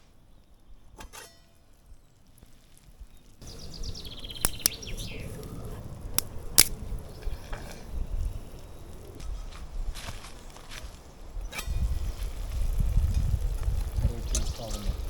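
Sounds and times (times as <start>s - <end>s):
campfire popping and crackling: 0.0s - 15.0s
songbird trilling: 3.4s - 5.8s.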